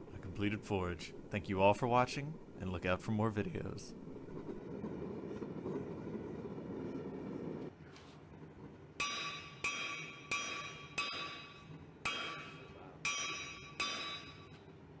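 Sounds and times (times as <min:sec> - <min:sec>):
hammer striking steel anvil: 0:09.0 - 0:14.6.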